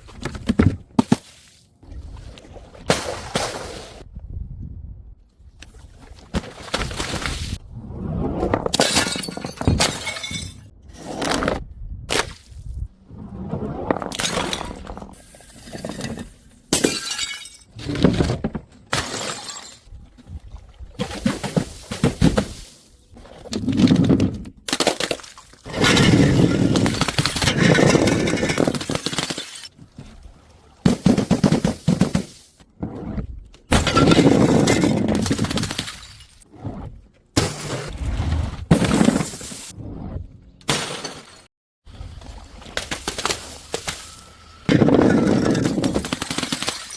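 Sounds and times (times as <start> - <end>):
glass bottles smashing: 8.8 - 10.7, 15.5 - 17.7, 19.0 - 19.9, 25.7 - 29.7, 33.7 - 36.2.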